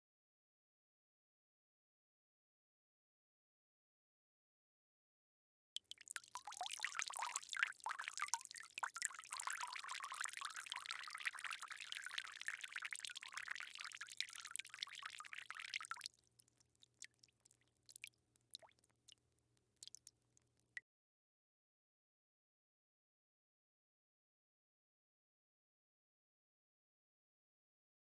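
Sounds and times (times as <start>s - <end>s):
water pouring: 5.8s - 19.2s, 19.8s - 20.1s
faint drips: 5.8s - 20.8s.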